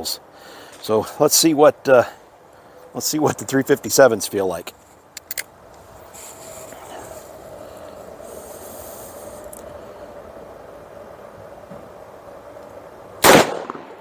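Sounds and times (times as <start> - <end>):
background hiss: 0.0 - 14.0
faint hum: 5.7 - 13.2.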